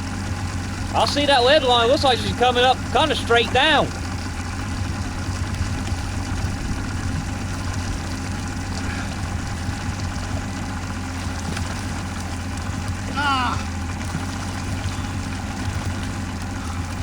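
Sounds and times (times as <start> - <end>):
boat engine idling: 0.0 - 17.0.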